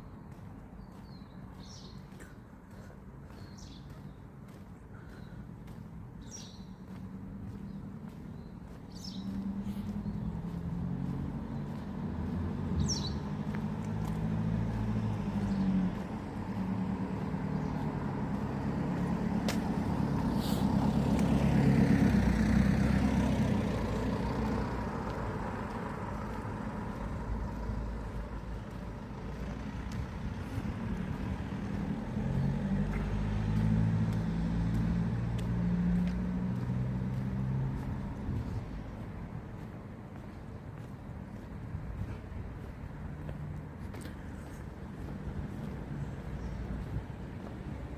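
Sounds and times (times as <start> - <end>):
bird chirping: 0.0 - 2.4, 5.0 - 12.0, 12.7 - 13.6
vehicle engine passing: 6.5 - 47.9.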